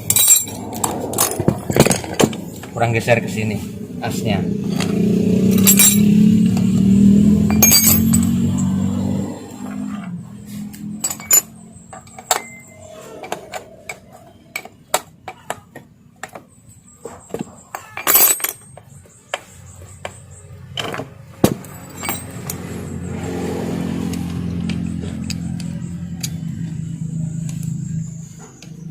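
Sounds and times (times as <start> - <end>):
metal parts clicking and clinking: 0.0 - 2.4, 4.7 - 6.8, 7.4 - 8.8, 9.6 - 16.4, 17.0 - 23.1
low hum: 0.0 - 14.8.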